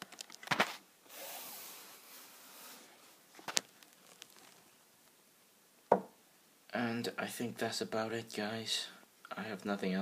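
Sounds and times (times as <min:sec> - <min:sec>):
handling rustle: 0:03.3 - 0:04.7.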